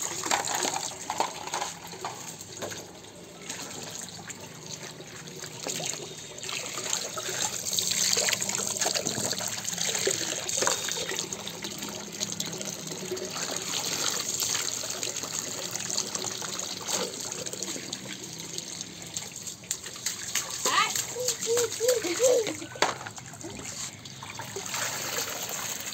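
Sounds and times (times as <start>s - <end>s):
water running and trickling: 0.0s - 25.9s
water splashes: 2.2s - 25.9s.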